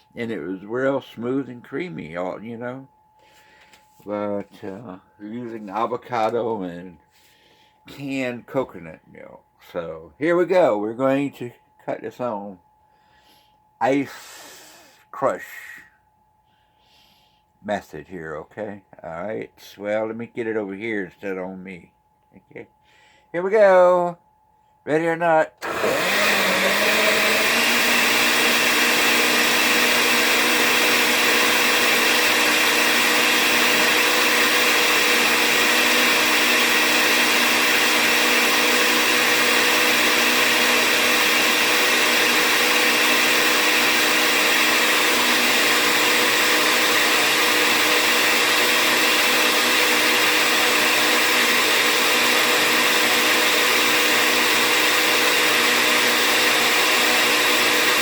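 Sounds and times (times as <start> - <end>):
blender running: 25.6 - 58.0.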